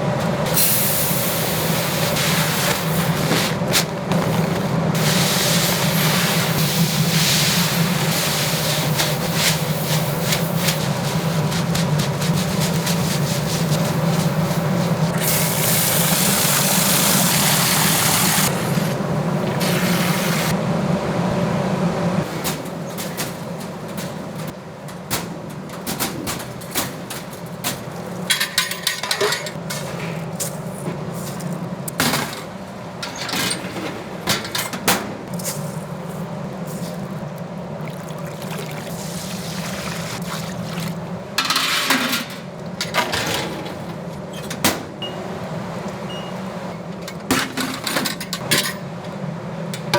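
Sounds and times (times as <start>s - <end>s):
machine hum: 9.8s - 25.8s
utensils and containers clattering: 22.4s - 36.0s, 39.6s - 44.7s, 46.8s - 48.9s.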